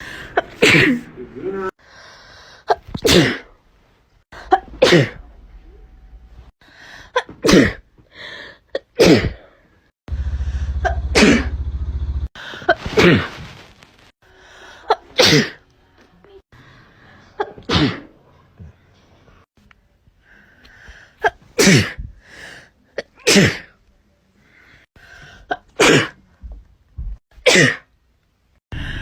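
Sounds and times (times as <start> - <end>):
person sneezing: 0.5 - 1.1, 2.7 - 3.5, 7.2 - 7.8, 9.0 - 9.5, 12.7 - 13.4, 15.1 - 15.6, 21.6 - 22.1, 23.2 - 23.7
intake of breath: 1.8 - 2.7, 6.6 - 7.2, 8.1 - 8.7, 14.2 - 14.9, 28.7 - 29.0.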